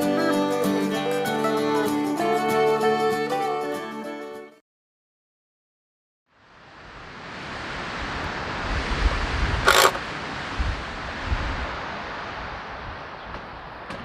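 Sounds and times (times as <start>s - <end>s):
wind buffeting microphone: 8.0s - 14.0s
brief sharp rattle: 9.7s - 10.0s.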